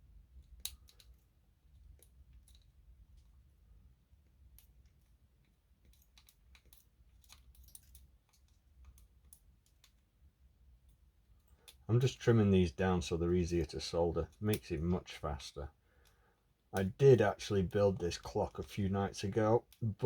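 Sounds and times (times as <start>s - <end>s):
small clicks and taps: 0.4s - 3.4s, 4.2s - 10.1s.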